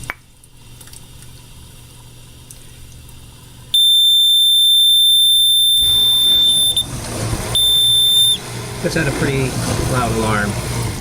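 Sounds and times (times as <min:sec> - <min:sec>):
water leak alarm tone: 0:03.7 - 0:08.8.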